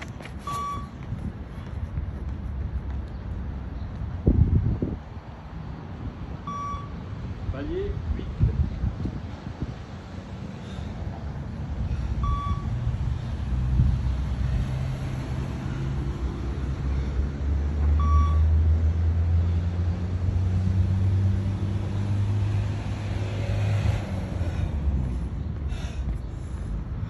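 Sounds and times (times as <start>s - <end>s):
short electronic beeps: 0.4s - 0.9s, 6.5s - 7.0s, 12.2s - 12.8s, 18.0s - 18.5s.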